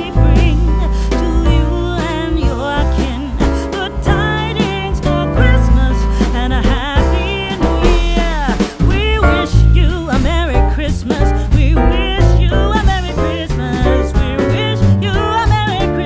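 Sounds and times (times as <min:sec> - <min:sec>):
guitar bass and beat: 0:00.0 - 0:16.0
person singing: 0:00.0 - 0:16.0.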